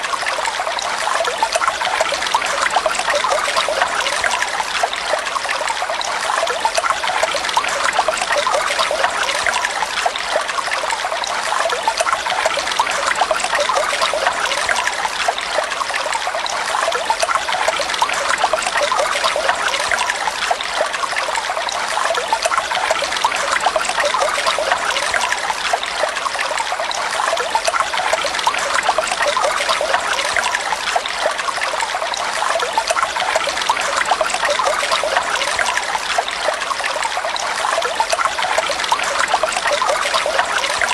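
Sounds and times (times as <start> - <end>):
water trickling and splashing: 0.0 - 40.9.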